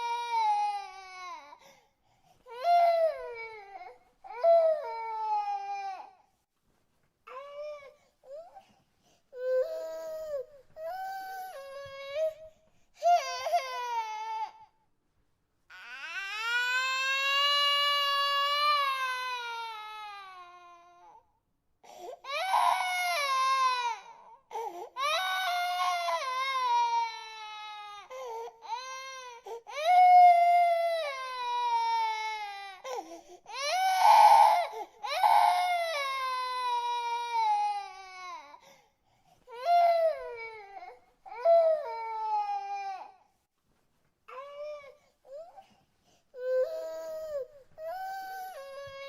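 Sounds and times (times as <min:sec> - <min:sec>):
baby crying: 0:13.0 - 0:14.7, 0:22.2 - 0:38.6.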